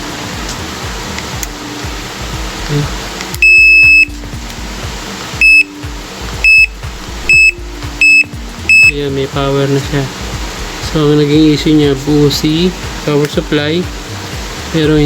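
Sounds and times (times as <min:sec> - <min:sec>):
washing machine buzzer beeping: 0:00.0 - 0:09.6
steady hiss: 0:00.0 - 0:15.0.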